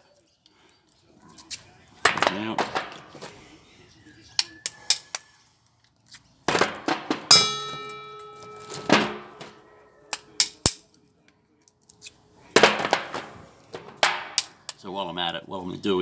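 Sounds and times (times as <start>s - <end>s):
loud metal clang ringing: 6.5s - 10.8s, 12.6s - 14.7s
metal parts knocking and clanking: 6.5s - 10.8s, 12.6s - 14.8s.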